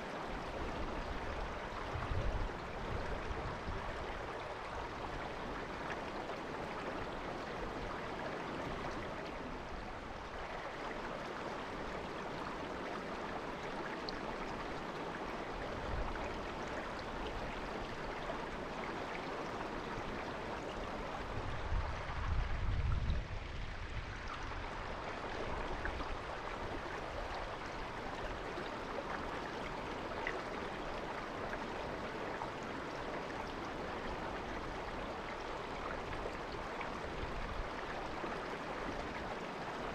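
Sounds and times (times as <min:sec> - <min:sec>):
river babbling over stones: 0:23.6 - 0:39.9.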